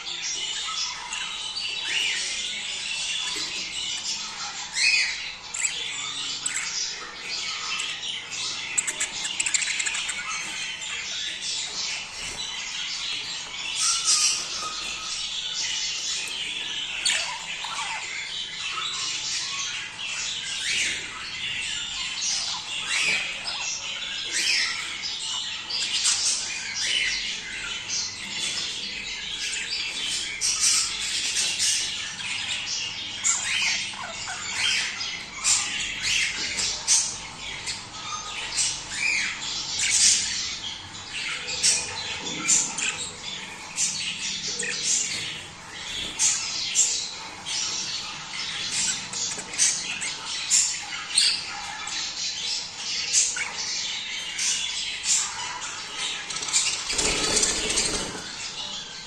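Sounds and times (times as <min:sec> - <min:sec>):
budgerigars chattering and squawking: 0:00.0 - 0:59.0.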